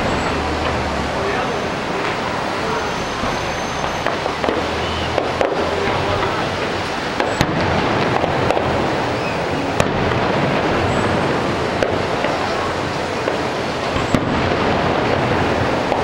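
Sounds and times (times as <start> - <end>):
constant din: 0.0 - 16.0
fireworks exploding: 0.0 - 16.0.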